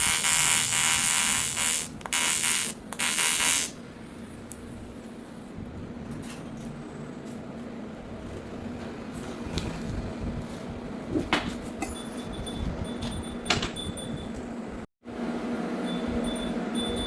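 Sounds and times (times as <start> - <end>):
welding arc buzzing: 0.0 - 3.8.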